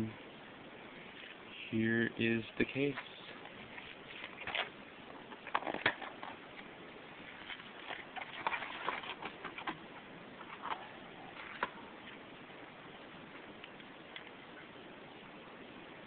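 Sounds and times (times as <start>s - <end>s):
packaging rustling: 3.5s - 6.4s.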